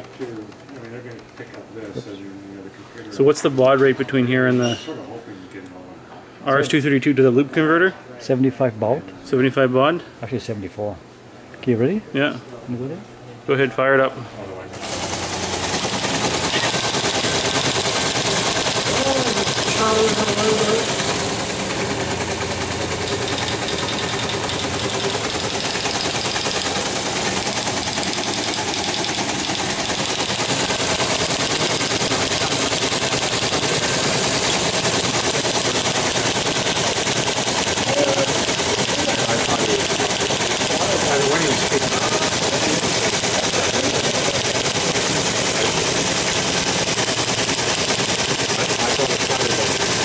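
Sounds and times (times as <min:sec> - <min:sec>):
teleprinter mechanical clatter: 0:00.0 - 0:02.1, 0:14.8 - 0:50.0.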